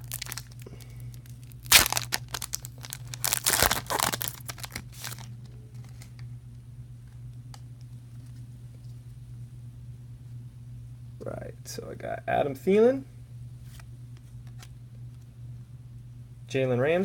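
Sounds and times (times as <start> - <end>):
card pack wrapper crinkling: 0.0 - 6.1
low steady hum: 0.0 - 17.0.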